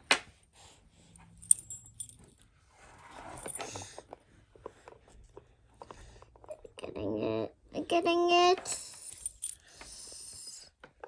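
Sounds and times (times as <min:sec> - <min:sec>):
toy key and lock clicking: 0:08.7 - 0:09.6.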